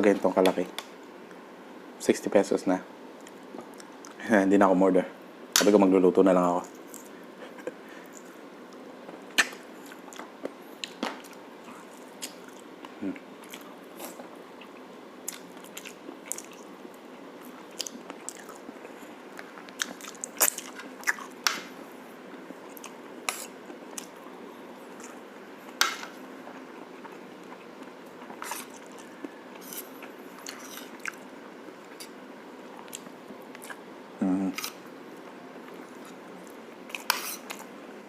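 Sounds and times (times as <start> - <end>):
person chewing: 6.8 - 21.6, 24.9 - 32.2, 32.8 - 33.8.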